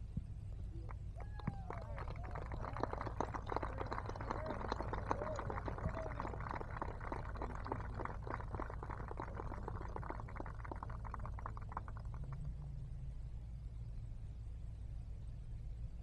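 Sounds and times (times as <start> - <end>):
small crowd clapping: 0.7 - 12.6.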